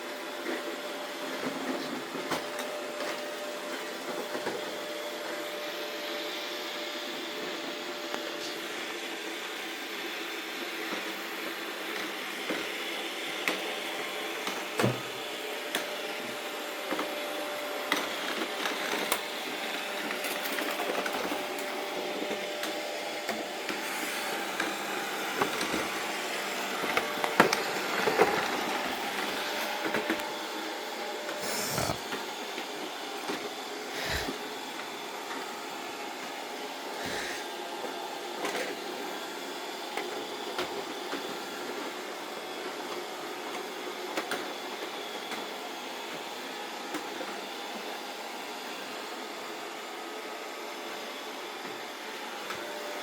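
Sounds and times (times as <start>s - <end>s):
robot vacuum cleaner whirring: 0.1s - 53.0s.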